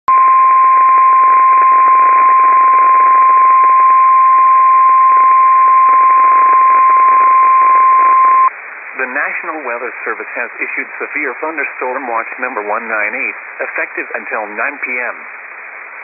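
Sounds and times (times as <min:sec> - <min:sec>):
loud steady alarm beep: 0:00.1 - 0:08.5
faint radio hiss: 0:05.1 - 0:16.0.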